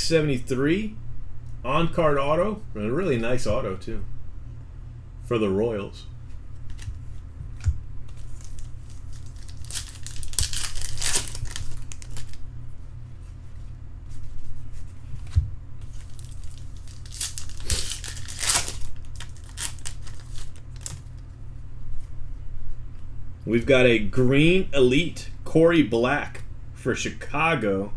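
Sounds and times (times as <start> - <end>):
steady low hum: 0.0 - 27.9
wrappers tearing and crinkling: 8.2 - 12.4, 15.8 - 21.2.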